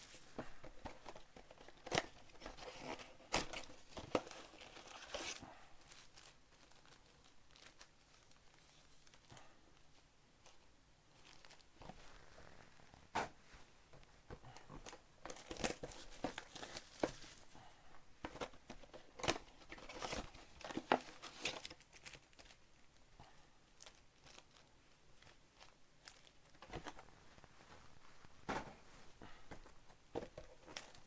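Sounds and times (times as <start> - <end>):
plastic wrappers tearing and crinkling: 1.5 - 9.3, 11.2 - 11.7, 19.2 - 22.7, 23.8 - 27.4.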